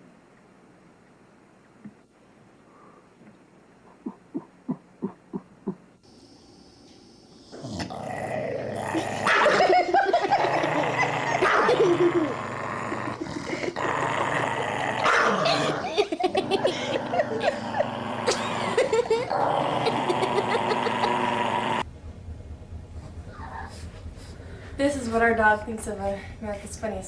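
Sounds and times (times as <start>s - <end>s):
dog growling and barking: 7.5s - 21.9s.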